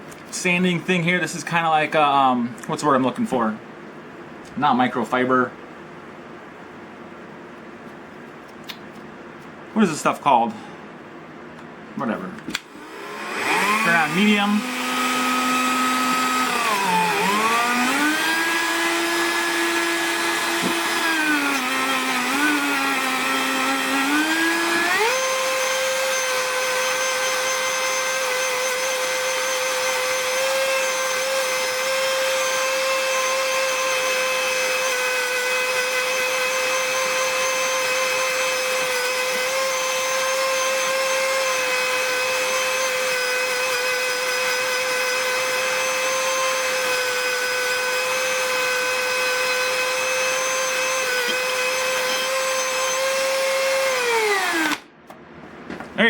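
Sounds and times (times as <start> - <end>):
rotary tool whining: 12.6 - 54.8.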